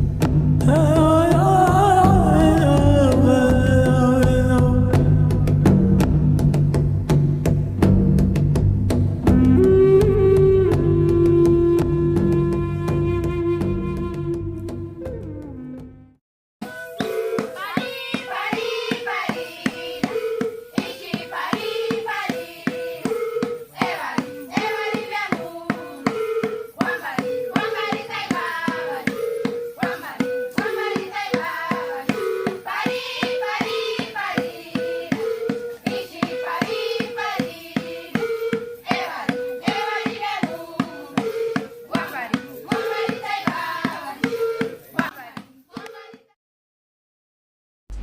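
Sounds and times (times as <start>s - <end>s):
music with percussive beat: 0.0s - 16.0s, 16.6s - 46.4s.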